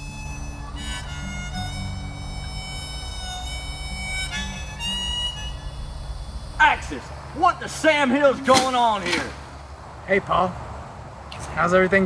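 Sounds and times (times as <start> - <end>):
music of long held chords: 0.0 - 7.6
low steady hum: 0.0 - 11.3.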